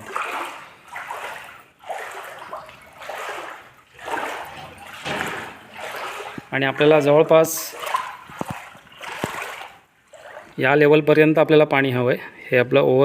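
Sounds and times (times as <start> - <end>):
pool water splashing: 0.0 - 11.8.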